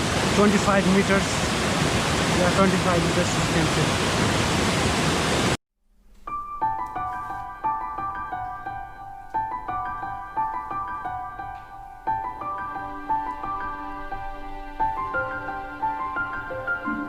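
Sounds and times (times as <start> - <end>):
rushing waterfall: 0.0 - 5.6
soft keyboard music: 6.0 - 17.0.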